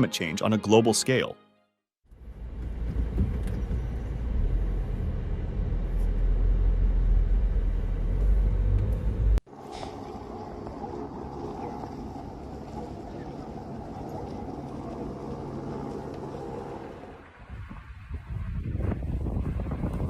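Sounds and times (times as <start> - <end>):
wind buffeting microphone: 10.0 - 20.0.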